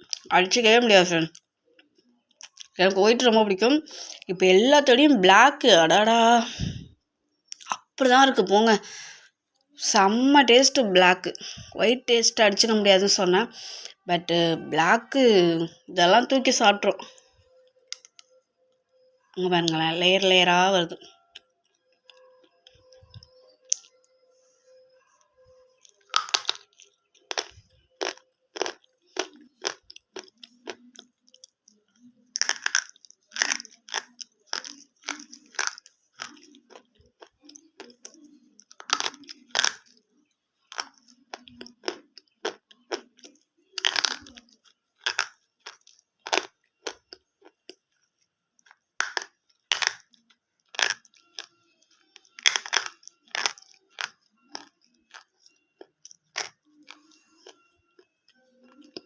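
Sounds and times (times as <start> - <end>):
person chewing: 0.0 - 0.3, 1.3 - 2.8, 3.9 - 4.4, 7.5 - 8.0, 17.5 - 18.4, 21.1 - 24.1, 25.7 - 59.0
crunchy bites of brittle clay: 26.1 - 30.8, 32.4 - 36.5, 38.7 - 39.9, 43.8 - 44.4, 45.0 - 47.0, 48.7 - 50.1, 50.7 - 51.5, 52.3 - 55.2.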